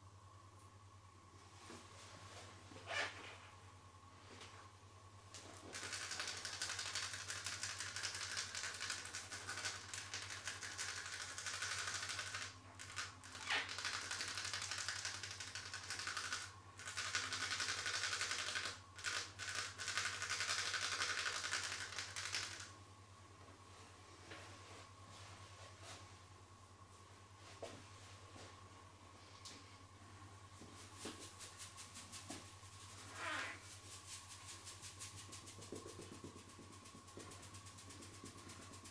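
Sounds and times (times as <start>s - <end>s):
hands massaging clicks and scratching: 5.7s - 22.7s, 31.0s - 38.9s.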